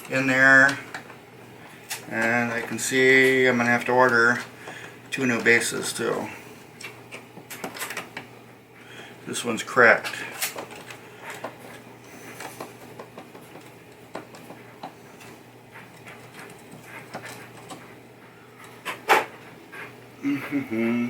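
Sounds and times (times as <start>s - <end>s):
small parts clicking and rubbing: 10.0s - 19.4s.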